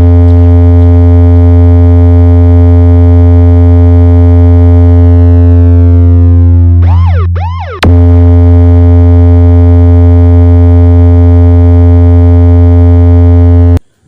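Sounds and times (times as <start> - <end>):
deep synthesizer bass tone: 0.0 - 13.8
swooping pitch sweeps: 4.8 - 7.9.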